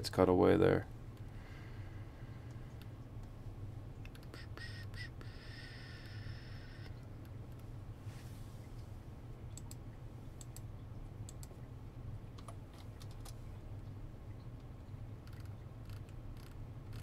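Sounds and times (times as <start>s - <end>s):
low hum: 0.0s - 17.0s
keyboard and mouse clicks: 4.0s - 5.1s, 9.5s - 9.8s, 11.3s - 11.6s, 12.4s - 13.4s, 15.2s - 17.0s.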